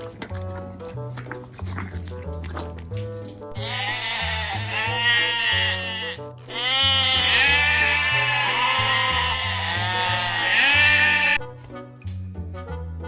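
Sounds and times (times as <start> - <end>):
animal bleating: 3.6 - 11.4.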